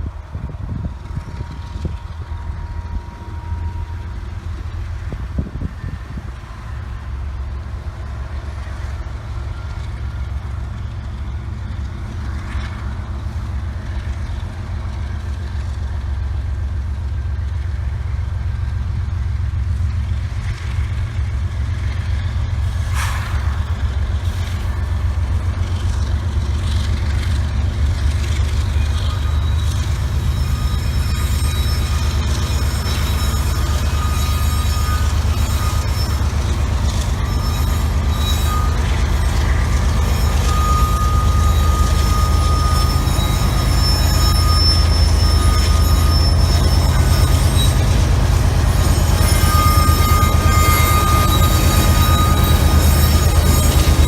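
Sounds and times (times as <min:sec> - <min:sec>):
diesel locomotive engines rumbling: 0:00.0 - 0:54.0
brief hiss: 0:22.7 - 0:24.7.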